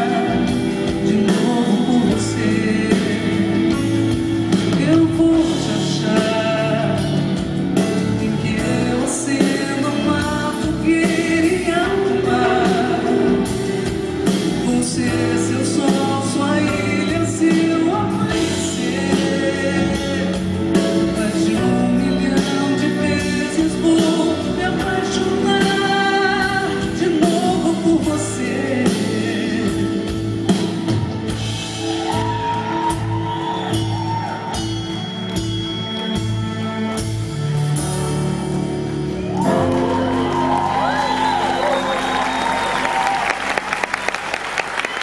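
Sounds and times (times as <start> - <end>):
woman singing: 0.0 - 3.8, 4.6 - 13.6, 14.5 - 30.0
live band with drumbeat: 0.0 - 45.0.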